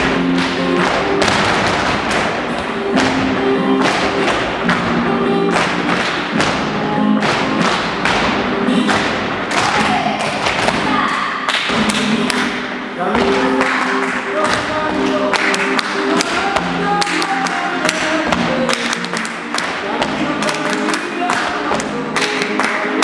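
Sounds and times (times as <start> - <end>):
sharp percussive thumps and taps: 0.3 - 10.9.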